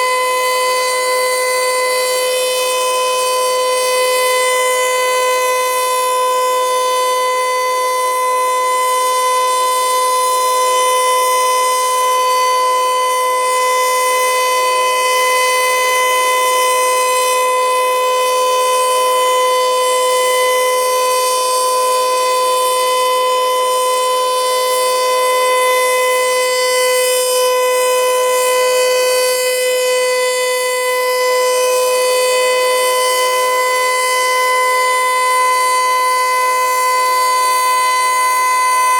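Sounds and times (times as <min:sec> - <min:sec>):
warning siren steady tone: 0:00.0 - 0:38.9.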